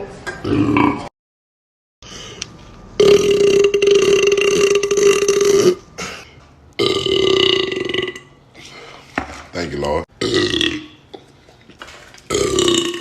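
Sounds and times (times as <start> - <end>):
man burping: 3.0 - 8.4, 10.2 - 11.0, 12.3 - 13.0.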